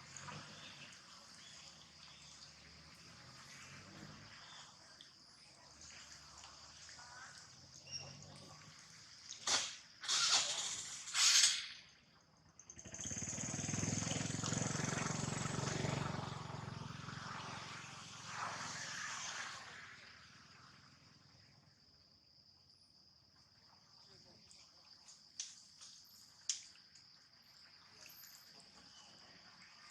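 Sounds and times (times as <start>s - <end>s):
engine running: 12.6s - 20.9s.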